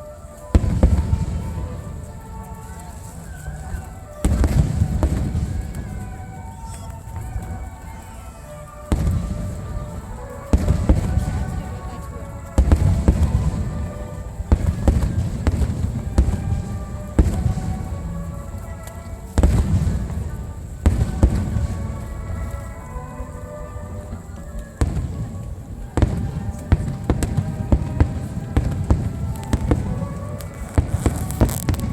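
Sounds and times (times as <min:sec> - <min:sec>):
firework crackling tails: 0:00.0 - 0:31.9
music: 0:00.0 - 0:31.9
firework shells booming: 0:00.5 - 0:02.3, 0:04.1 - 0:07.6, 0:08.9 - 0:18.4, 0:19.4 - 0:22.0, 0:26.0 - 0:31.9.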